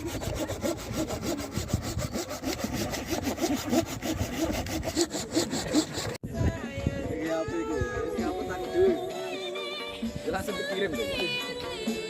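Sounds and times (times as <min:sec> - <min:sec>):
hand saw cutting wood: 0:00.0 - 0:06.2.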